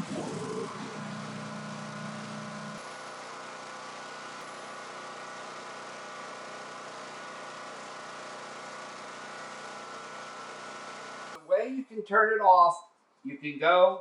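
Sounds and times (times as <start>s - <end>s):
generator engine running: 0.0s - 11.4s.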